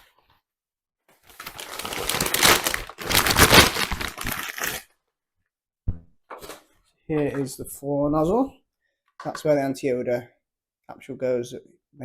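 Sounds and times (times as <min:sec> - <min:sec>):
packaging crinkling: 0:01.2 - 0:04.9.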